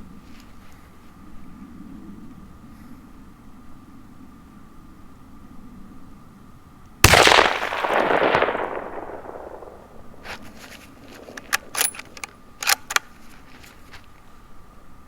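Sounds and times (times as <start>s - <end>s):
rifle shot echoing: 7.0s - 12.3s
short sharp clicks: 7.1s - 13.0s.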